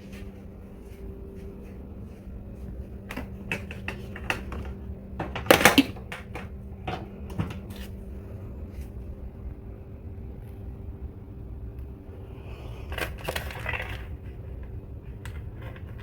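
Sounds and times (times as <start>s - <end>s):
steady low hum: 0.0s - 16.0s
hard objects clicking and knocking: 3.0s - 7.8s.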